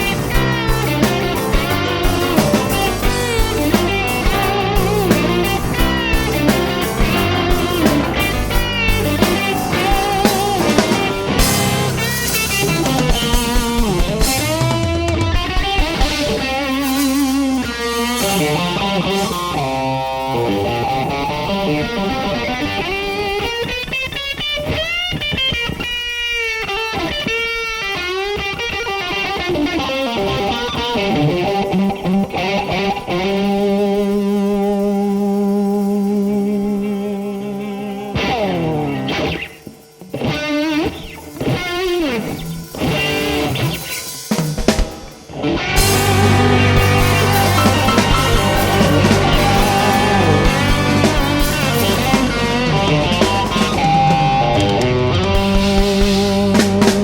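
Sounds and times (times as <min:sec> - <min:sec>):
drums: 0:00.0 - 0:57.0
lead electric guitar: 0:00.0 - 0:57.0.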